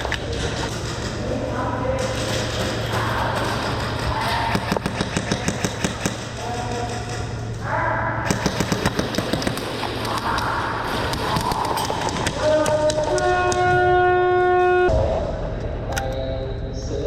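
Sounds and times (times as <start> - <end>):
airsoft gun bursts: 2.0 - 7.4, 8.3 - 13.2.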